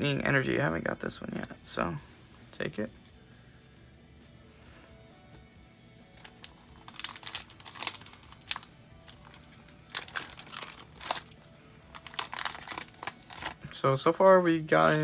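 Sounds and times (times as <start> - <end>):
foil wrapper crinkling and tearing: 6.2 - 13.7.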